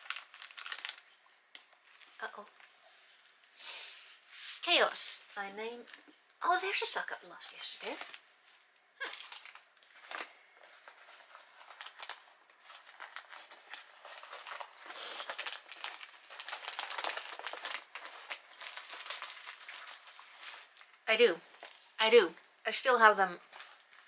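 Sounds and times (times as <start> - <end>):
hands rummaging and rustling: 9.1 - 21.9.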